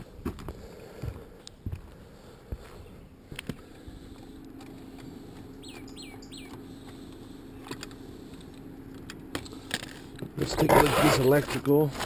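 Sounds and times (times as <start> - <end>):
low hum: 0.0 - 12.0
bird chirping: 5.5 - 6.8.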